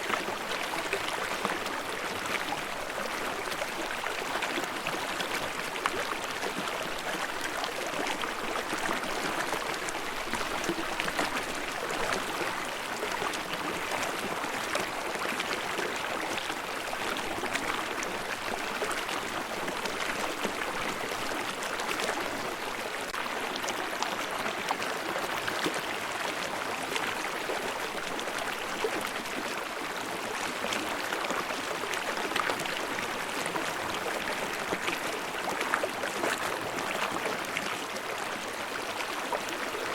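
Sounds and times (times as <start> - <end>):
stream rushing and babbling: 0.0 - 39.9.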